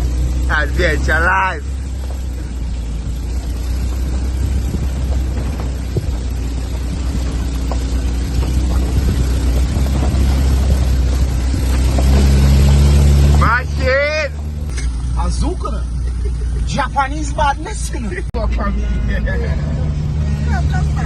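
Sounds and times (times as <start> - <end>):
vehicle engine droning: 0.0 - 21.0
knocks and rattles: 1.8 - 13.6.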